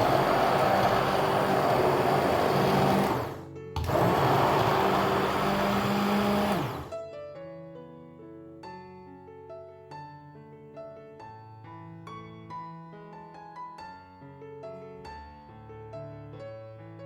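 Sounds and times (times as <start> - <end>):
blender motor whirring: 0.0 - 7.0.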